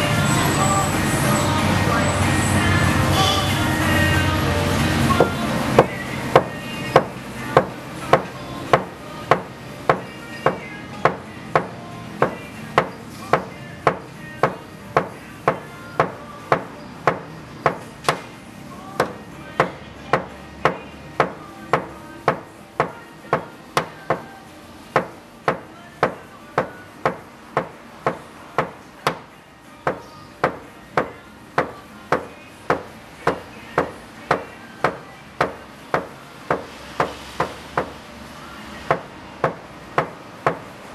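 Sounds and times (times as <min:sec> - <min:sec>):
hammer tapping on sheet metal: 0:05.2 - 0:18.3, 0:19.0 - 0:24.3, 0:25.0 - 0:29.2, 0:29.9 - 0:38.0, 0:38.9 - 0:40.6.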